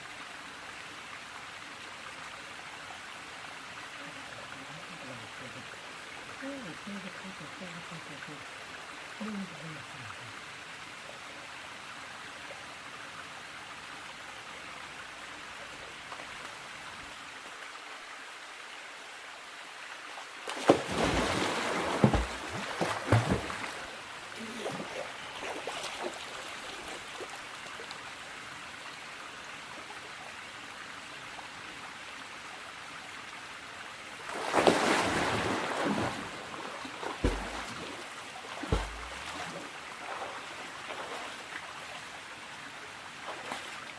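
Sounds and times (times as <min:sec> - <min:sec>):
mountain stream rushing: 0:13.3 - 0:32.8, 0:33.4 - 0:43.9
water splashing: 0:20.4 - 0:27.8, 0:34.2 - 0:41.8, 0:43.2 - 0:43.9.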